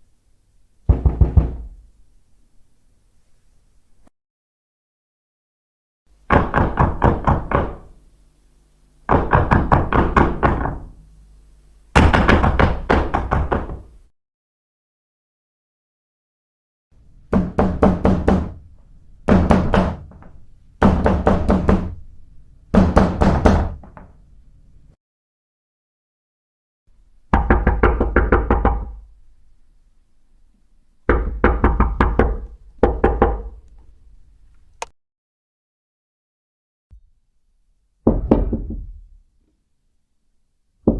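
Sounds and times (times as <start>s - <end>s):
knocking on a door: 0.9s - 1.8s, 6.2s - 8.0s, 9.1s - 11.0s, 12.0s - 13.9s, 17.3s - 18.6s, 19.3s - 22.0s, 22.8s - 24.1s, 27.3s - 29.0s, 31.1s - 33.6s, 38.0s - 39.1s.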